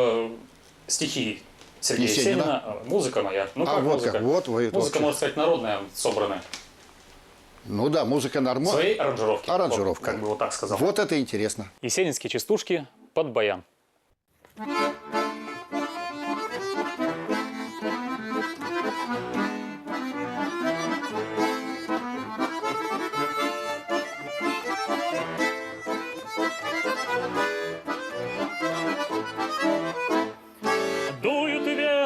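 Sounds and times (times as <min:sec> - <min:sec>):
button accordion playing: 0:14.6 - 0:32.0.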